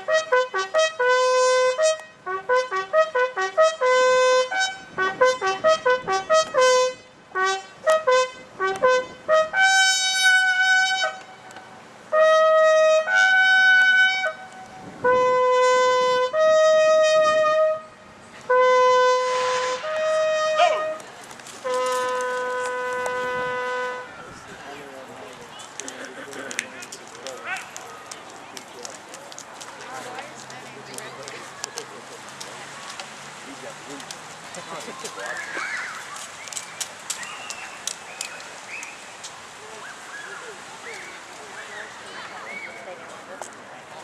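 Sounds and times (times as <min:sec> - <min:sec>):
solo bugle call: 0:00.0 - 0:11.5, 0:12.1 - 0:21.0, 0:21.6 - 0:24.2.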